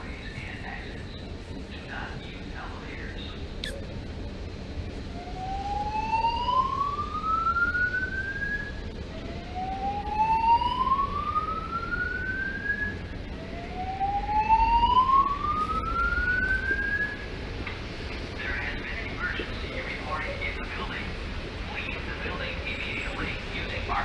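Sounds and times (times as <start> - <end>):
slow-whoop alarm tone: 5.4 - 8.8, 9.4 - 17.2.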